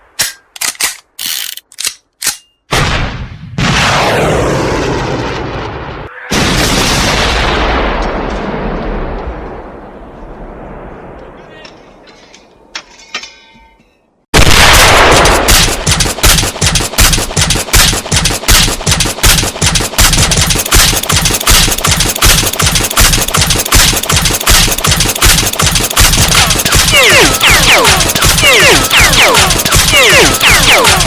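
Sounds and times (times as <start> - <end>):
automatic gunfire: 14.4 - 31.0.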